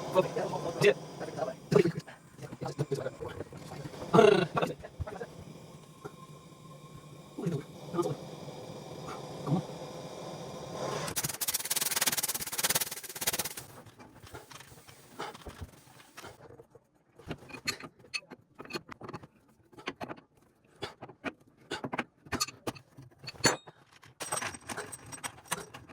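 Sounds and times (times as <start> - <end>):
rush of noise: 0.0 - 13.6.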